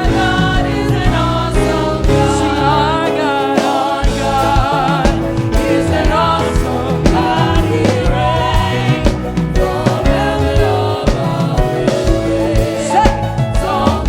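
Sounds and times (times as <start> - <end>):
band with bass and beat: 0.0 - 14.0
voices singing together: 0.0 - 14.0.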